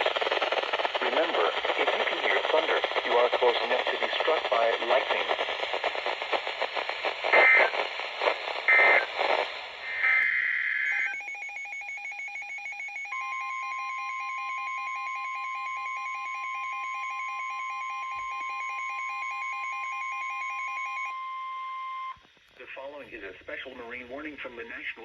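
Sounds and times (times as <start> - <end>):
harsh digital data bursts: 6.3 - 12.6
steady warning alarm tone: 9.9 - 22.2
electronic alarm beeps: 10.0 - 22.2.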